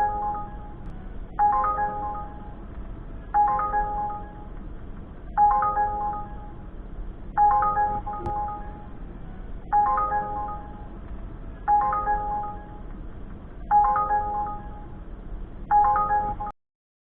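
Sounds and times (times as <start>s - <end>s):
phone ringtone chime: 0.0s - 0.8s, 1.4s - 2.5s, 3.4s - 4.4s, 5.4s - 6.6s, 7.4s - 9.0s, 9.7s - 10.9s, 11.7s - 12.8s, 13.7s - 14.9s, 15.7s - 16.5s.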